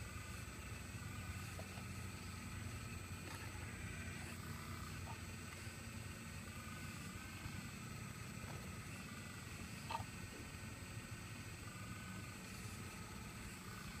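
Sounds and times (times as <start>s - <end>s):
excavator engine drone and whine: 0.0s - 14.0s.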